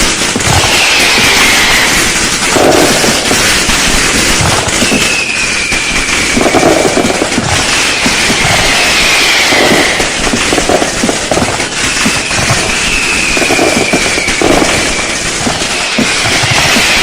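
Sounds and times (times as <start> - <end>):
firecrackers crackling: 0.0 - 17.0
falling whistle: 0.6 - 2.2, 4.7 - 10.3, 11.9 - 17.0.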